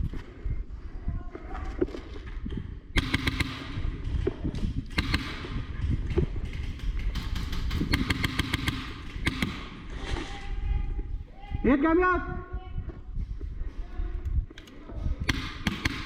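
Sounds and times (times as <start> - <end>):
airsoft gun firing bursts: 2.9 - 4.2, 4.9 - 9.9, 15.2 - 16.0.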